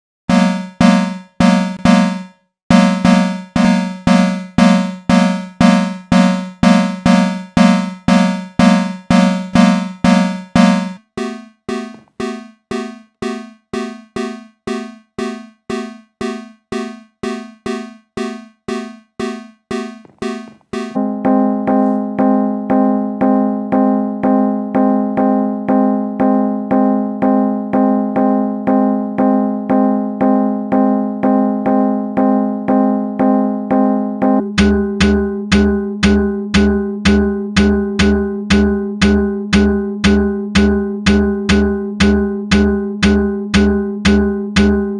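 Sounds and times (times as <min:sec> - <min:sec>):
pulsing fire alarm: 0:00.3 - 0:21.2.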